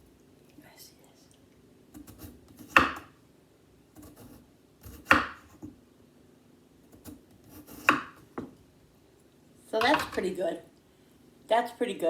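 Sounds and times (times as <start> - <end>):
knife slicing potato: 1.9 - 3.2, 3.9 - 5.8, 6.9 - 8.6, 9.8 - 10.3.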